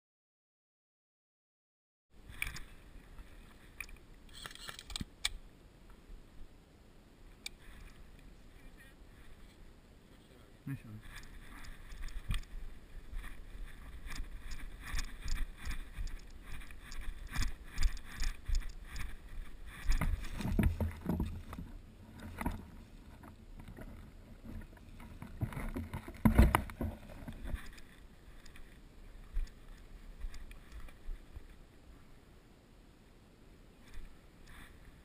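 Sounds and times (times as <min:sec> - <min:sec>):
irregular thumps: 0:11.0 - 0:28.7
rustling and scuffing: 0:11.0 - 0:31.7.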